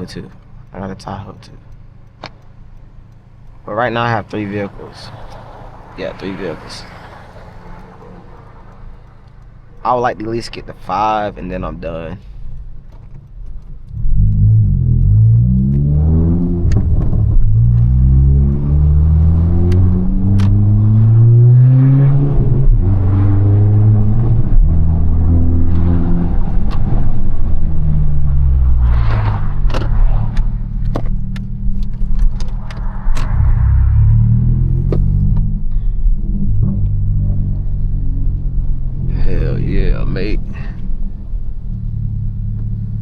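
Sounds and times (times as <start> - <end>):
sharp clicks: 0.0 - 20.8, 24.6 - 34.0
car engine accelerating: 0.1 - 43.0.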